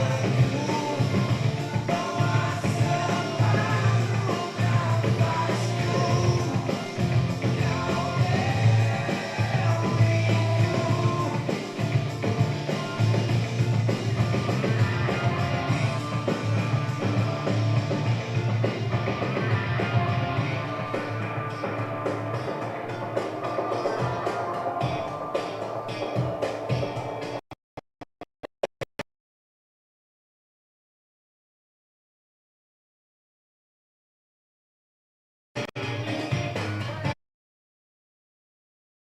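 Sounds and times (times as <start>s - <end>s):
person singing: 0.0s - 11.8s
heavy bass line: 0.0s - 23.1s
rock band playing live: 0.0s - 27.4s, 35.8s - 37.1s.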